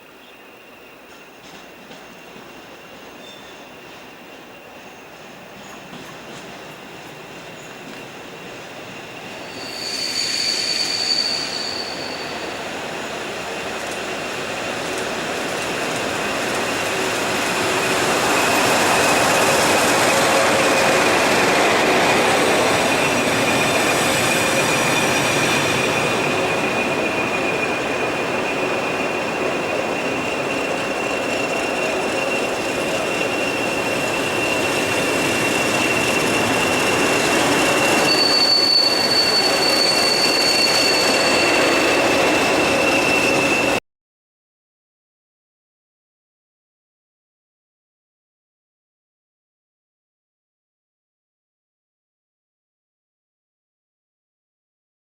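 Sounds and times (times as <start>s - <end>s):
rush of passing train: 0.0s - 43.8s
train wheels squealing on rails: 0.0s - 43.8s.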